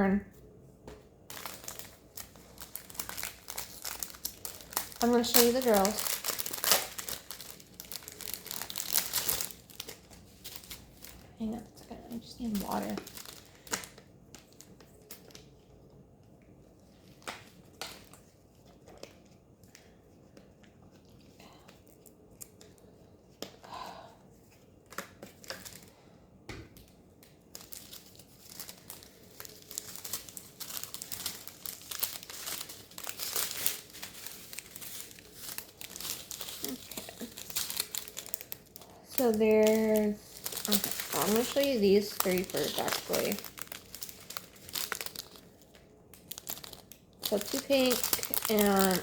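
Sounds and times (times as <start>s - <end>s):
plastic packaging crinkling: 1.2s - 15.9s, 16.7s - 19.4s, 24.8s - 26.1s, 26.8s - 49.0s.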